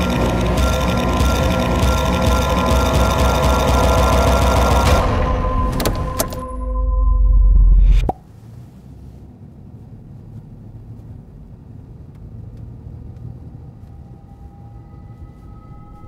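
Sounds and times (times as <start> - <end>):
truck engine low rumble: 7.1 - 16.0
faint music tones: 12.3 - 16.0.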